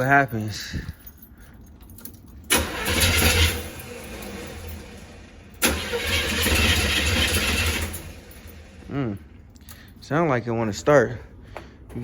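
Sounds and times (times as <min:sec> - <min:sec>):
car engine cranking on starter: 0:02.5 - 0:08.8.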